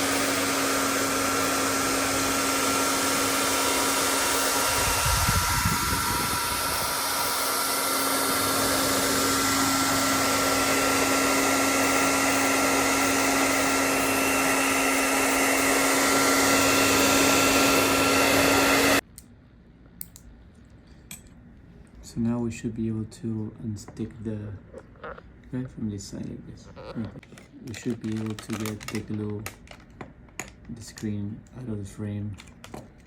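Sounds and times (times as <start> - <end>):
hot-air blower whirring hum: 0.0 - 19.1.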